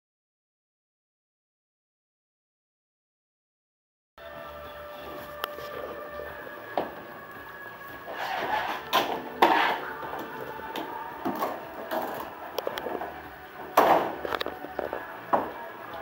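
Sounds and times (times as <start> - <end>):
hard objects knocking and clattering: 8.7 - 15.6.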